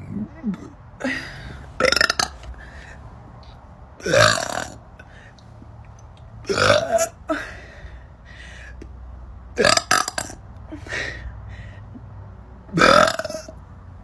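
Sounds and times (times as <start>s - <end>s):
woman burping: 0.0s - 2.5s, 4.0s - 4.8s, 6.5s - 7.5s, 9.6s - 10.4s, 12.7s - 13.6s.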